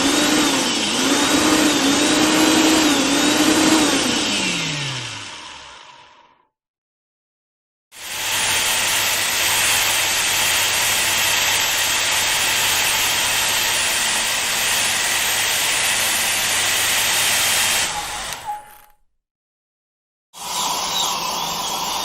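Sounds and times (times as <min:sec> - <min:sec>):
power drill running: 0:00.0 - 0:06.2, 0:08.0 - 0:19.0.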